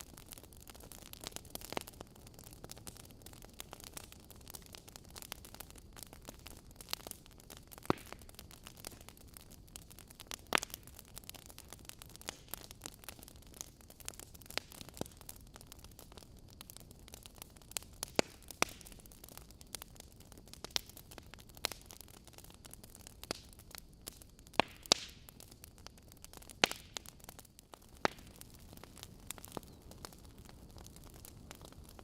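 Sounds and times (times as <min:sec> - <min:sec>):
fire crackling and popping: 0:00.0 - 0:32.0
low steady hiss: 0:00.0 - 0:32.0.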